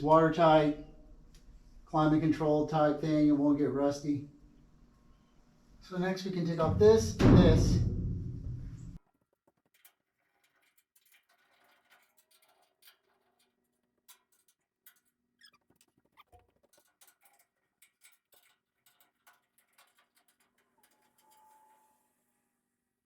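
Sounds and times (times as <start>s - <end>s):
faint small clicks and taps: 15.8s - 21.4s.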